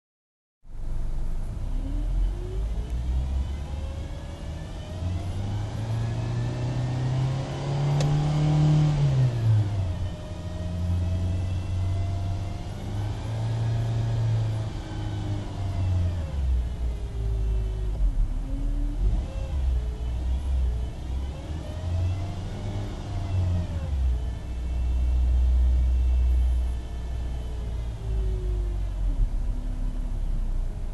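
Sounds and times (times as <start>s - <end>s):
low engine drone: 0.7s - 22.5s, 23.2s - 30.9s
transmission whine: 15.5s - 21.1s.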